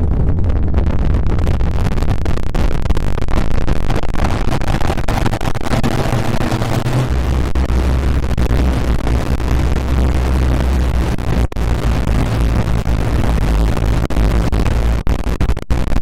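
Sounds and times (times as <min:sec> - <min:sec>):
constant crackling: 0:00.0 - 0:16.0
distorted bass rumbling: 0:00.0 - 0:16.0.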